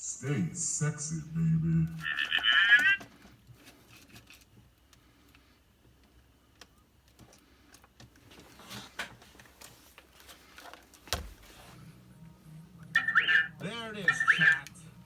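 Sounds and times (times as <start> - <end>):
faint clicks and taps: 2.0 - 11.4.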